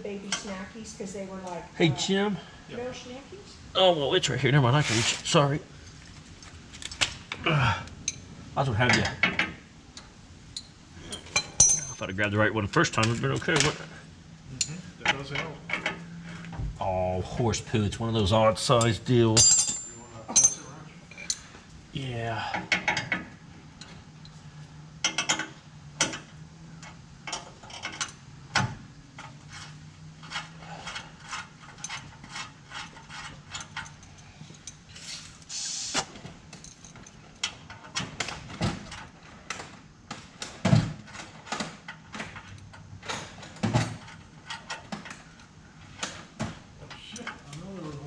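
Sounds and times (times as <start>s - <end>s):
metal tools clinking: 10.5s - 12.1s, 18.7s - 21.6s, 29.2s - 35.5s, 36.5s - 38.0s
short hiss: 35.0s - 36.2s.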